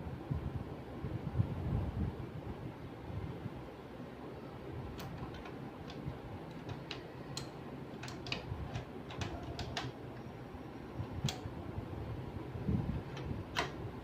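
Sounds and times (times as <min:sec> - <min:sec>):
steady low hum: 0:00.0 - 0:14.0
screwdriver clicking on screws: 0:05.0 - 0:09.9.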